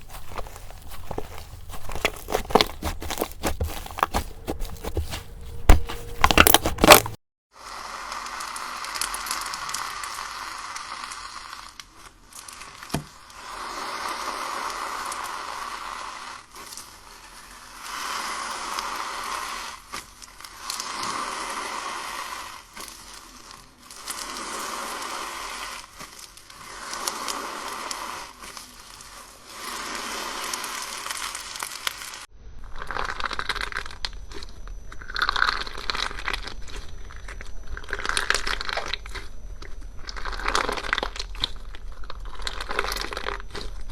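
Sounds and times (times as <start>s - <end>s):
slime crackling and crinkling: 0.0s - 7.2s.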